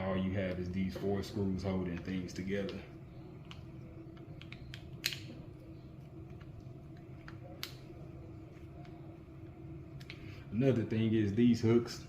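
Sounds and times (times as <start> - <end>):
faint steady hum: 0.0 - 12.0
small clicks and taps of parts: 3.4 - 5.3.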